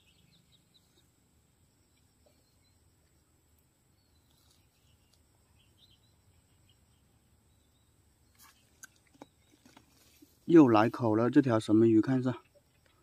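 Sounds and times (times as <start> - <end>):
faint bird chirps: 0.0 - 10.4.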